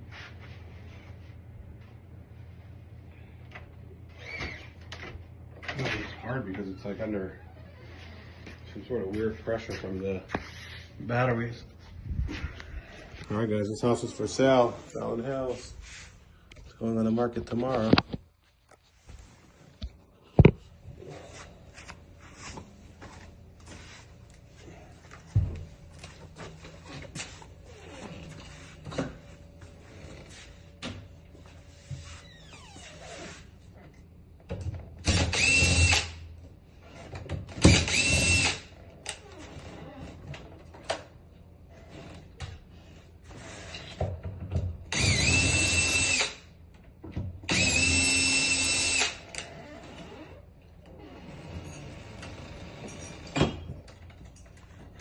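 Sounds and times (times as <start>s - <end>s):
cordless drill whining: 35.0s - 36.2s, 37.6s - 38.7s, 44.9s - 46.5s, 47.5s - 50.2s.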